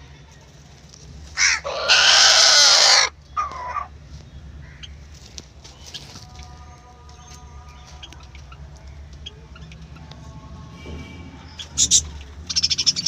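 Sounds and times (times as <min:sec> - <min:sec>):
rooster crowing: 0:01.4 - 0:03.9.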